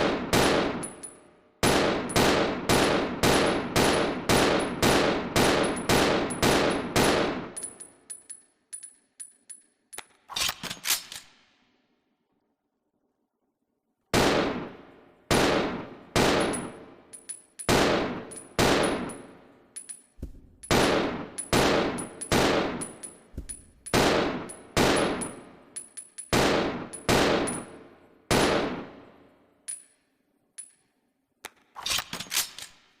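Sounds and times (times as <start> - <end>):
handgun shots: 15.4 - 16.7, 17.7 - 19.2, 20.2 - 25.4.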